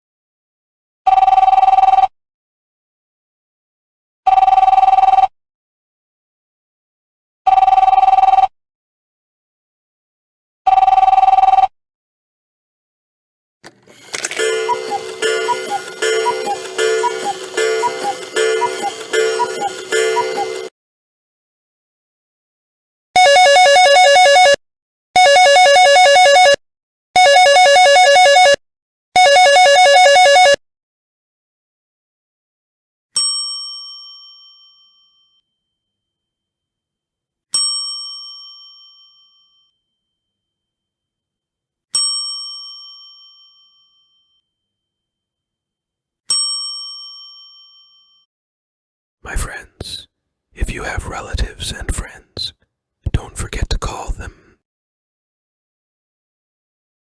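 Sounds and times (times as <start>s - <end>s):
mobile phone ringtone: 1.1s - 2.1s, 4.3s - 5.3s, 7.5s - 8.5s, 10.7s - 11.7s, 14.0s - 20.7s, 23.2s - 24.6s, 25.2s - 26.6s, 27.2s - 28.6s, 29.2s - 30.6s
bell-like phone ringtone ding: 14.2s - 20.7s, 29.2s - 30.6s, 33.2s - 35.7s, 37.6s - 40.4s, 42.0s - 44.7s, 46.3s - 48.3s.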